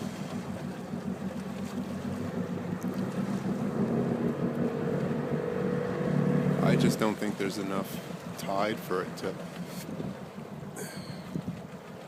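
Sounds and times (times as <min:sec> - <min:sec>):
boat engine humming: 0:00.0 - 0:12.0
water washing: 0:00.0 - 0:12.0
wind buffeting microphone: 0:09.6 - 0:12.0.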